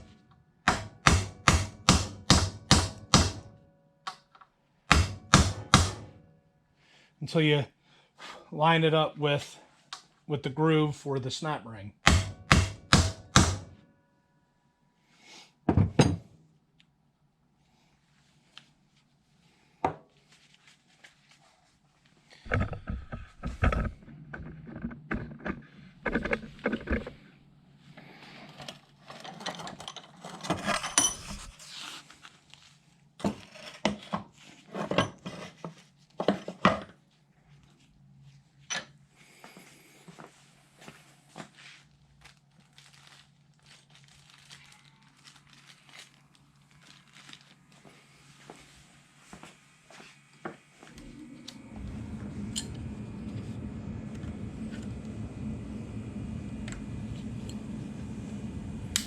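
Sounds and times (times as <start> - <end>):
metal parts clanking and scraping: 28.4 - 31.7.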